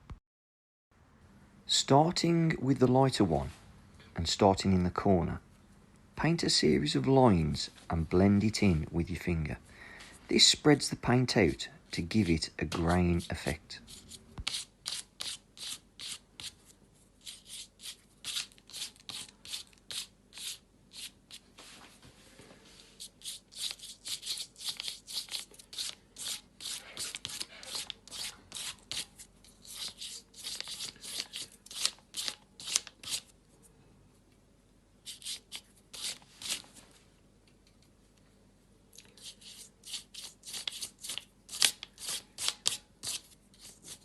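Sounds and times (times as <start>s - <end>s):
fingertip rubbing paint on paper: 13.2s - 21.5s, 23.0s - 33.3s, 35.1s - 36.6s, 39.2s - 44.0s.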